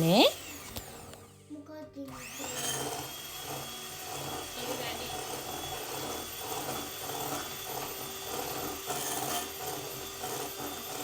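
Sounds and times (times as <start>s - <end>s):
electric mixer running: 0.0s - 11.0s
beaters scraping bowl: 2.3s - 11.0s.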